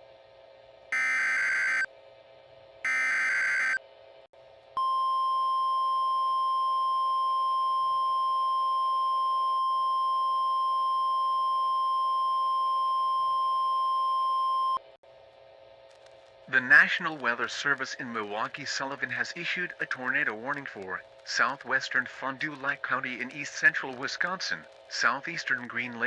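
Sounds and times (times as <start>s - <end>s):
steady alarm tone: 0.9s - 1.9s, 2.9s - 3.8s
buzzy digital data signal: 1.0s - 1.9s, 2.9s - 3.8s.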